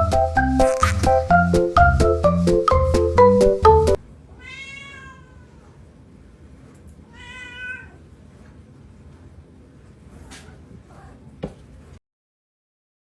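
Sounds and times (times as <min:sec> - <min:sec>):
mallet percussion music: 0:00.0 - 0:04.0
cat meowing: 0:04.4 - 0:05.8, 0:07.1 - 0:08.0.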